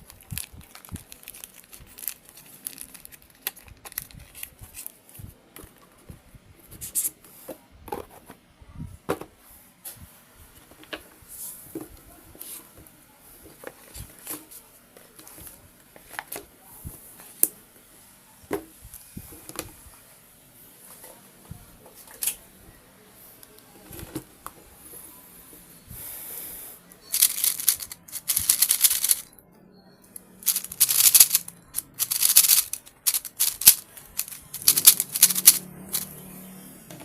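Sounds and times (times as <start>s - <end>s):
speed cube clacking: 27.1s - 29.3s, 30.4s - 36.1s.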